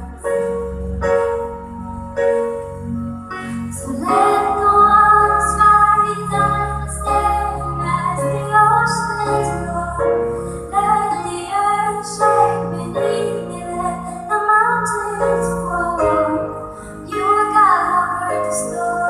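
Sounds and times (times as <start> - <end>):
instrumental backing music: 0.0 - 19.0
woman singing a worship song: 3.8 - 19.0.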